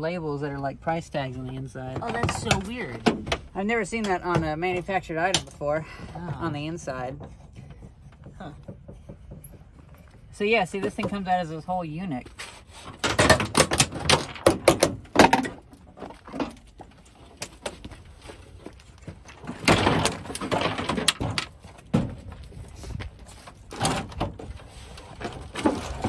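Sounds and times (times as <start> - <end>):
knocks and clatters: 1.9 - 11.2, 13.0 - 18.0, 18.9 - 24.6
scraping and rattling parts: 12.4 - 26.0.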